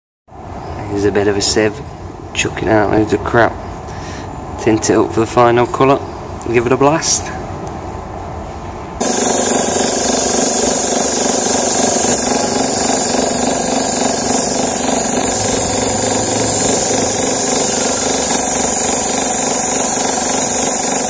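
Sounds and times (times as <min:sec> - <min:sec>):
air tool rushing: 0:09.0 - 0:21.0.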